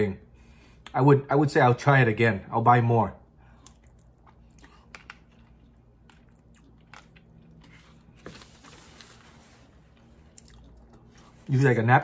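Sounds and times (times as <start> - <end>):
quiet chewing and biting: 3.4 - 8.8, 9.8 - 11.5.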